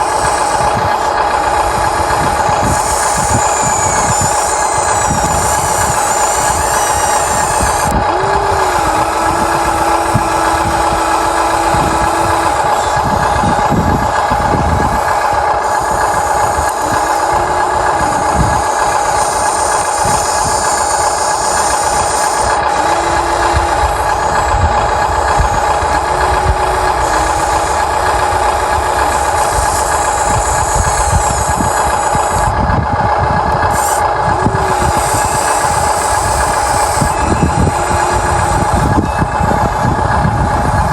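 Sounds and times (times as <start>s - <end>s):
electric motors whining: 0.0s - 40.9s.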